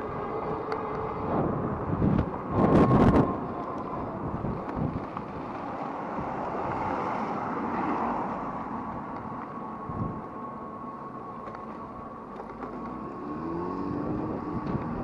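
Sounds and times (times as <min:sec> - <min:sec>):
wind buffeting microphone: 0:00.0 - 0:07.9, 0:08.8 - 0:10.8, 0:13.4 - 0:15.0.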